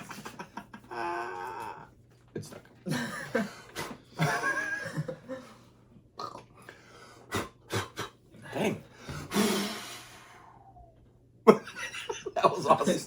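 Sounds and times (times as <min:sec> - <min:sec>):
person belching: 0:06.2 - 0:06.5.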